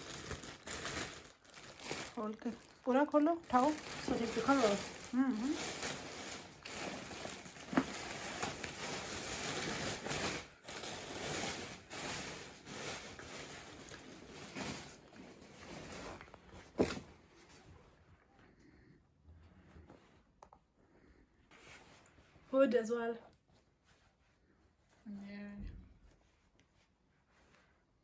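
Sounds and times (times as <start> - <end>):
plastic bag crinkling: 0.0 - 17.0
sharp plastic crackle: 0.0 - 17.0.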